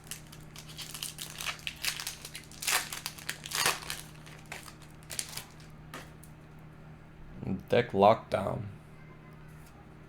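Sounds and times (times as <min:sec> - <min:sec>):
plastic wrapper crinkling: 0:00.0 - 0:06.1.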